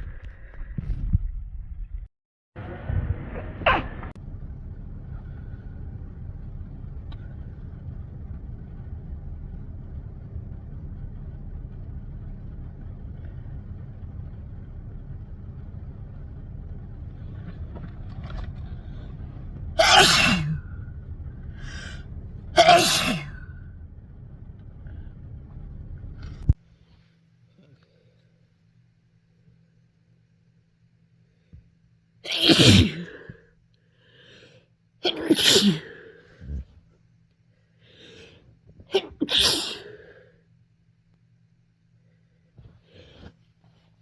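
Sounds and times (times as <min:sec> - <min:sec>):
low hum: 0:00.0 - 0:26.7
person sneezing: 0:19.8 - 0:20.7, 0:22.6 - 0:23.4, 0:32.3 - 0:33.3, 0:35.0 - 0:36.6, 0:38.9 - 0:40.0
catching breaths: 0:37.5 - 0:38.6, 0:42.1 - 0:43.6.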